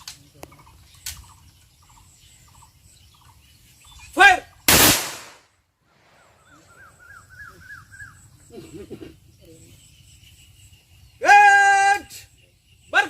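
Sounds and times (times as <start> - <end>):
rifle volley: 4.7 - 5.5.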